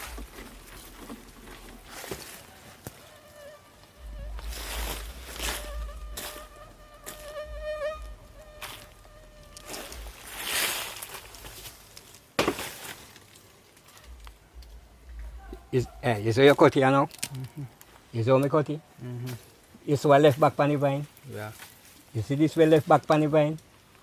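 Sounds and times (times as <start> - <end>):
rustling: 0.0 - 18.1, 19.1 - 24.0
flying insect buzzing: 2.9 - 11.2
low wind rumble: 4.0 - 11.7, 14.1 - 16.3.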